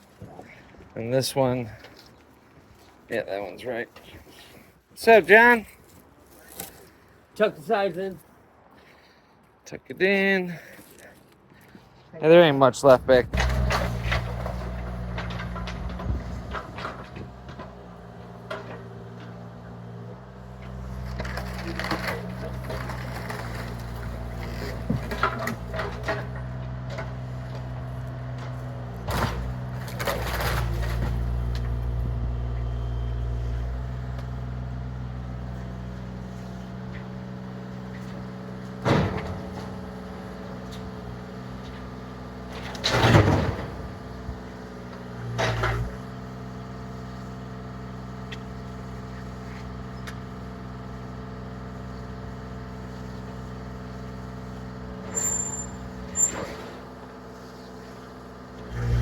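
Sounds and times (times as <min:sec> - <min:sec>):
engine running steadily: 0:12.9 - 0:59.0.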